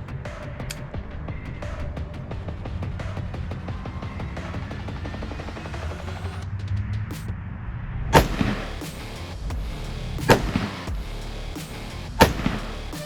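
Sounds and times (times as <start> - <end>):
rifle shots with echo: 8.2 - 9.2, 10.2 - 11.0, 12.2 - 13.0.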